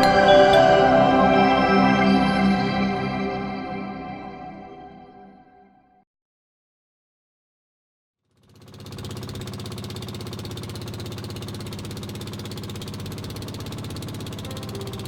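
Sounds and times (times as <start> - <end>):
small engine knocking: 8.2 - 15.0.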